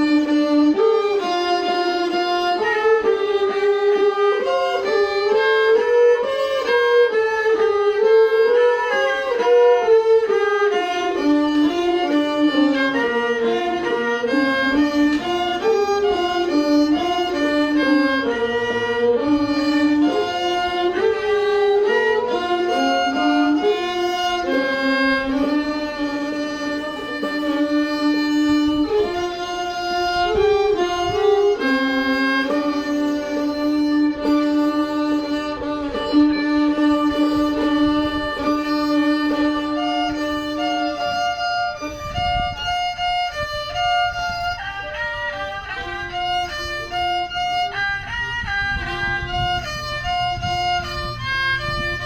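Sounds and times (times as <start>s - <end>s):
bowed fiddle melody: 0.0s - 52.0s
low bowed line: 0.0s - 52.0s.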